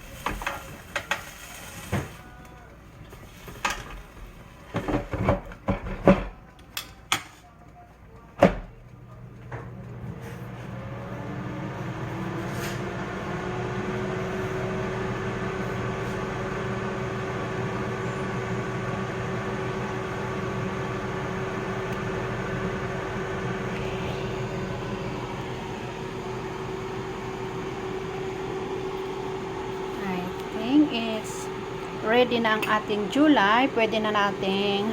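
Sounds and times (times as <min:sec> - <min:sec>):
kitchen appliance motor whirring: 0:09.5 - 0:34.9.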